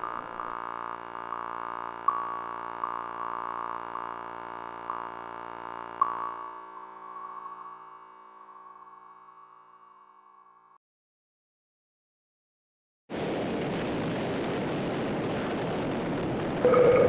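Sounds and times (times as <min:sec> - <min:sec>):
eerie electronic drone: 0:00.0 - 0:10.8, 0:16.6 - 0:17.0
sharp electronic pings: 0:01.4 - 0:10.4, 0:16.6 - 0:17.0.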